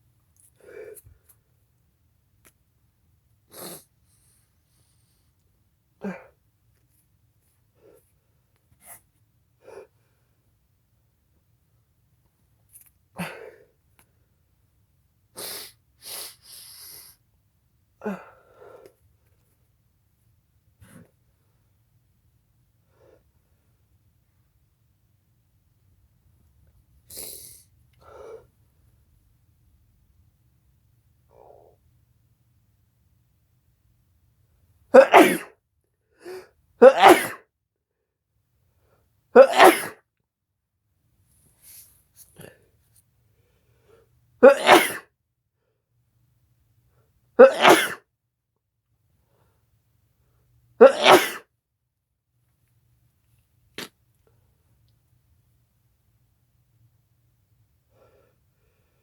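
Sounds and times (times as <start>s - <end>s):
person sneezing: 35.0s - 35.6s, 36.2s - 37.4s, 39.4s - 40.0s, 44.4s - 45.1s, 47.4s - 48.0s, 50.8s - 51.5s.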